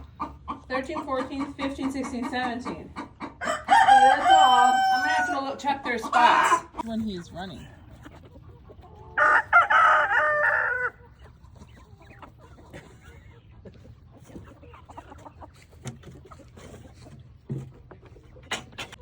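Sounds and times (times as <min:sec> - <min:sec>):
hens clucking: 0:00.0 - 0:19.0
hens scratching: 0:00.0 - 0:19.0
rooster crowing: 0:03.4 - 0:05.6, 0:09.2 - 0:11.0.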